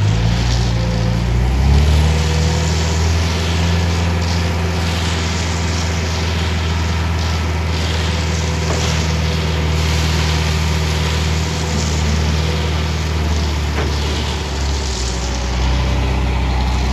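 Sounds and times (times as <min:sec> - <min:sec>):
diesel engine running: 0:00.0 - 0:16.9.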